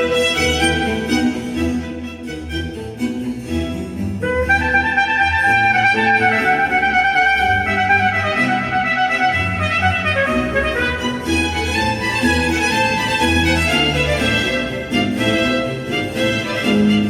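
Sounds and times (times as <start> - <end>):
orchestral accompaniment: 0.0 - 17.0
trumpet playing long notes: 4.2 - 11.4.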